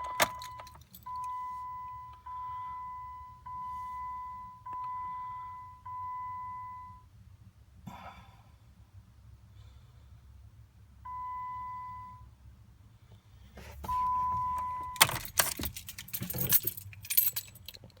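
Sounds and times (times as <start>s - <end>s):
keys jangling: 13.8s - 18.0s.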